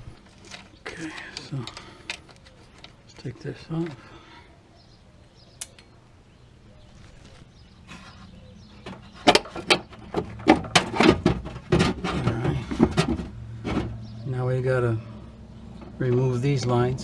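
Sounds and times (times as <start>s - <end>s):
clicks and knocks of car parts: 8.8s - 14.1s.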